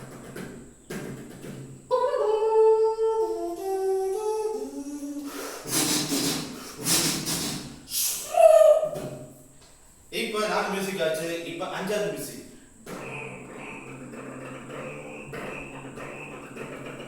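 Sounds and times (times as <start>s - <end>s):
person humming a tune: 1.9s - 9.2s, 12.8s - 17.0s
breathy hissing bursts: 4.4s - 8.5s, 12.2s - 17.0s.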